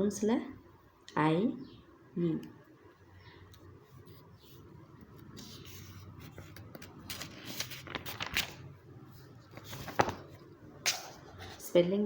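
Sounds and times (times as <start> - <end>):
faint scratching and rubbing: 3.8 - 7.9.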